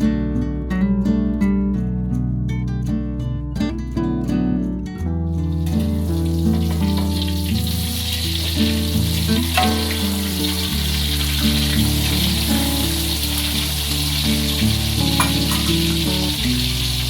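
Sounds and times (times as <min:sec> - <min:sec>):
food sizzling in frying pan: 0:05.4 - 0:17.0
background music: 0:05.9 - 0:17.0.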